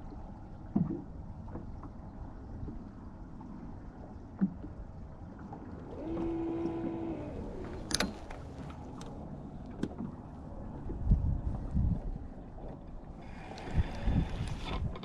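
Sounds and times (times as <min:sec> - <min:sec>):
wind and water rumble: 0:00.0 - 0:15.0
steady hum: 0:05.6 - 0:09.4
sharp clicks: 0:06.0 - 0:09.1.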